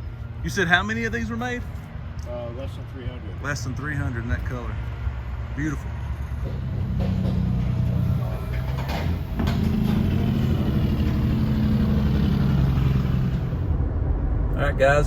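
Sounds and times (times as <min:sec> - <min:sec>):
car engine running: 0:06.3 - 0:13.9.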